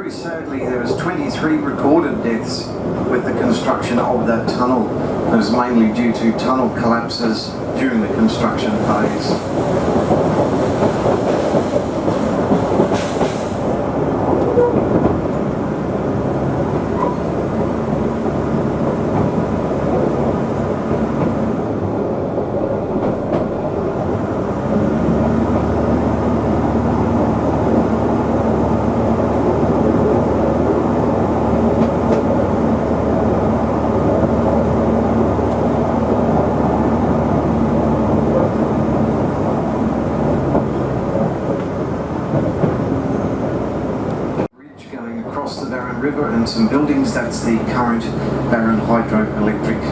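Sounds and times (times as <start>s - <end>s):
train running along track: 0.0s - 49.9s
low engine hum: 13.8s - 44.5s.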